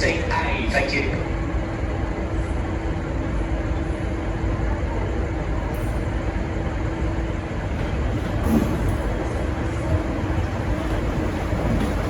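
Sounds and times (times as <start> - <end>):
diesel locomotive rumble: 0.0 - 12.0.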